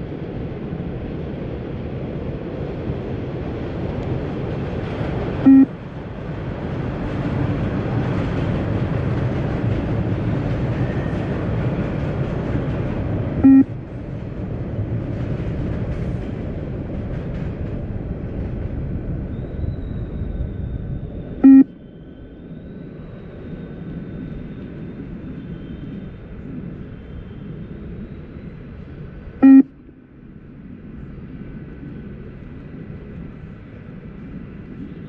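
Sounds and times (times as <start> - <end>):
steady background rumble: 0.0 - 35.0
short loud beeps: 5.5 - 5.7, 13.4 - 13.7, 21.4 - 21.7, 29.4 - 29.7.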